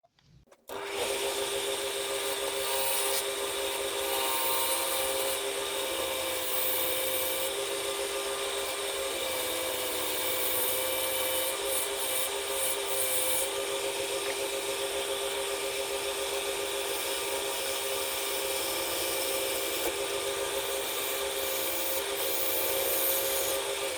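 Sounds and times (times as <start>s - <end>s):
wood lathe hum: 0.7s - 23.9s.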